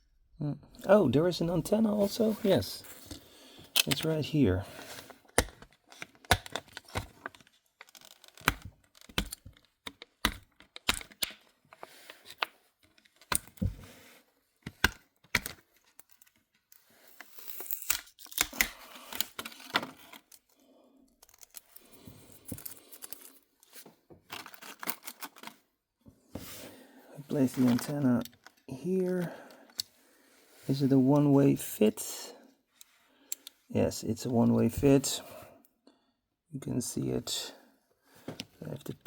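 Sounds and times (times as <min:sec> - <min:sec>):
plastic packaging crinkling and tearing: 0:17.0 - 0:20.5, 0:21.2 - 0:21.9, 0:24.3 - 0:25.6.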